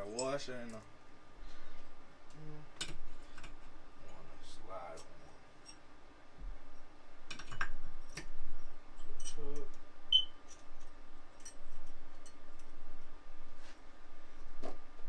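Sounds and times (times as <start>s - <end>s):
metal parts clicking and clinking: 0.0s - 0.9s, 7.3s - 8.3s, 9.0s - 9.8s, 10.4s - 12.8s.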